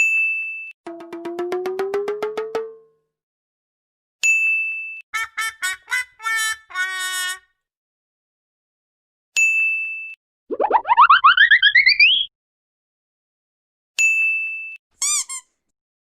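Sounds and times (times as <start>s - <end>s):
pulsing tone sliding upward: 10.5s - 12.3s.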